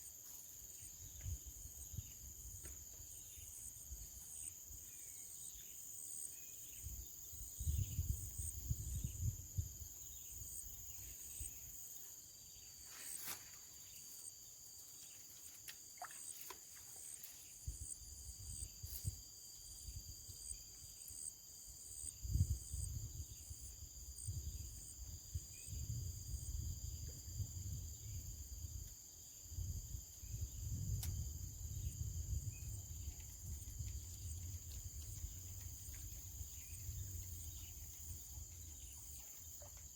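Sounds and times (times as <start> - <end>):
insects chirping and buzzing: 0.0 - 39.9
low rumble on microphone: 29.6 - 39.8.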